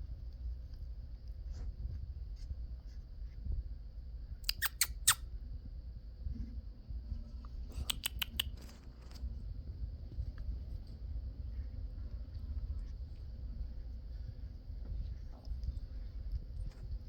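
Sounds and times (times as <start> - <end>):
person making kissing sounds: 4.4 - 5.2, 7.8 - 8.6.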